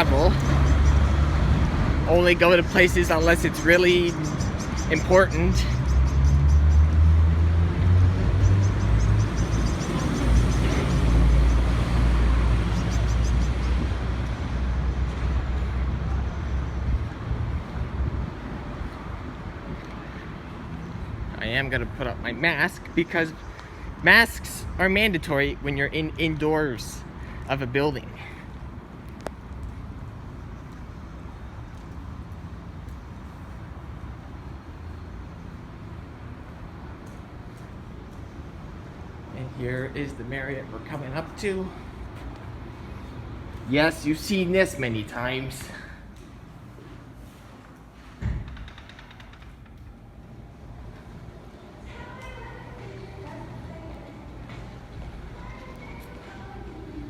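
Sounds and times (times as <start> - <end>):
road noise: 0.0 - 57.0
vehicle low rumble: 0.0 - 57.0.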